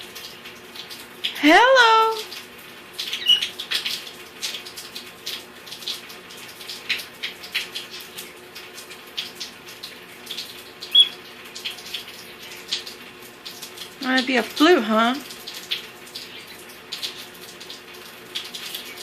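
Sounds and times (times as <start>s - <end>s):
parrot high chirps: 3.1s - 3.5s, 10.9s - 11.2s.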